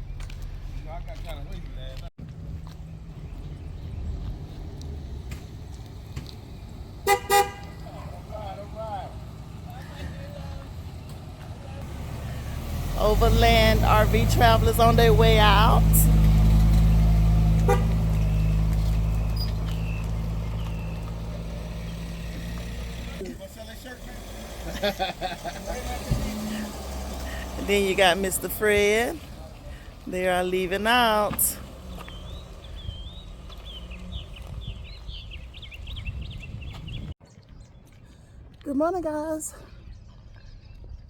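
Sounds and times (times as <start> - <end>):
vehicle engine running: 0.1 - 37.2
small birds twittering: 16.4 - 24.5, 29.4 - 37.9.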